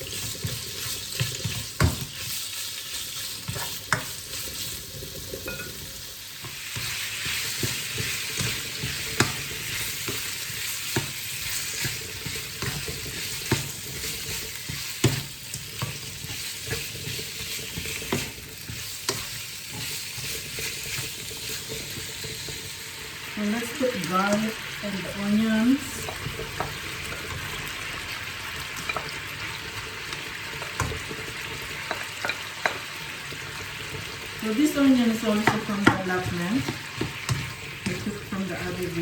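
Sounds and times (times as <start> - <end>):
food sizzling in a pan: 0.0 - 39.0
utensil knocking against pan: 35.4 - 38.0.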